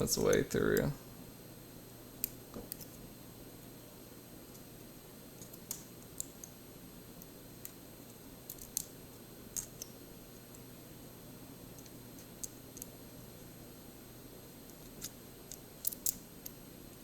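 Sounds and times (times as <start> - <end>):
small metal clicks and ticks: 8.5 - 8.9, 14.7 - 16.6.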